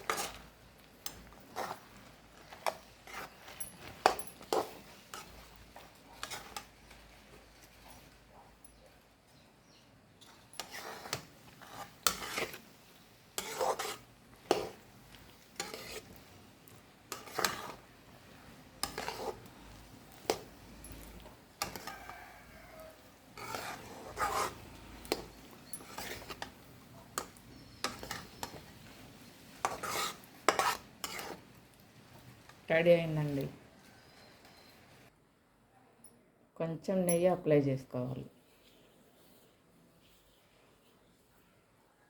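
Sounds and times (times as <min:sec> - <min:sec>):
spoon stirring thick syrup in pan: 0:00.0 - 0:34.7.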